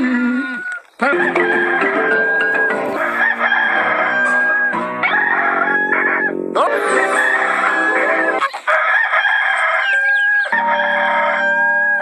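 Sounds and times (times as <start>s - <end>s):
rooster crowing: 0.5s - 12.0s
music: 1.1s - 8.4s, 10.6s - 12.0s.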